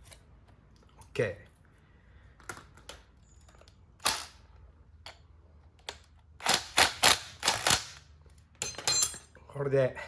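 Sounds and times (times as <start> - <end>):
metal tools clicking and clinking: 7.6 - 9.4.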